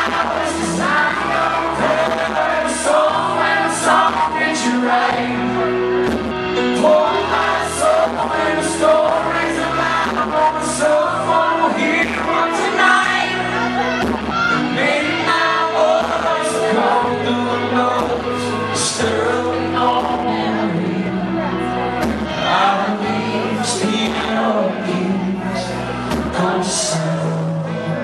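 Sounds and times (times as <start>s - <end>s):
bass notes: 0.0s - 28.0s
person singing: 6.6s - 28.0s.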